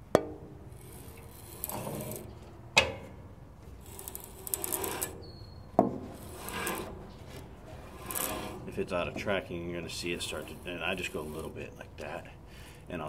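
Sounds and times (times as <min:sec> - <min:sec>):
bandsaw blade rasping: 0:00.7 - 0:02.3, 0:03.8 - 0:05.2, 0:06.1 - 0:07.0, 0:07.6 - 0:11.6.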